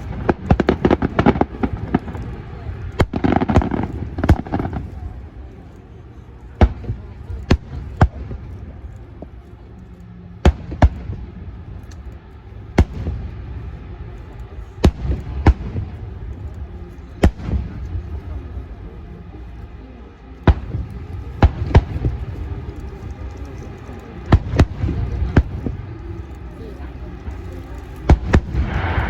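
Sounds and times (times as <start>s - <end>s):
fireworks bangs: 0.0s - 5.2s, 28.0s - 29.0s
crowd noise rumble: 0.0s - 29.0s.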